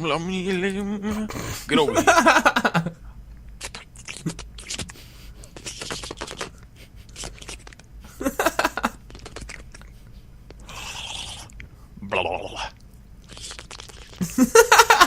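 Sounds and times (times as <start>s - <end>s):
wet lip smacks and kissing: 3.5s - 7.9s, 9.1s - 11.7s, 13.2s - 14.2s.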